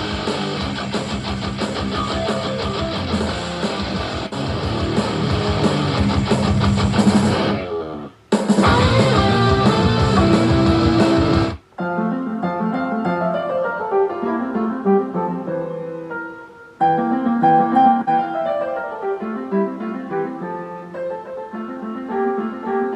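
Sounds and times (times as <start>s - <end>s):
dense guitar music: 0.0s - 11.6s
plucked and keyboard notes: 0.0s - 22.9s.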